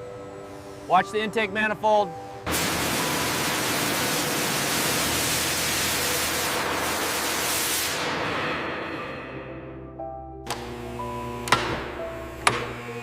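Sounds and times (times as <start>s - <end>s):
loud steady hiss: 0.0s - 9.0s.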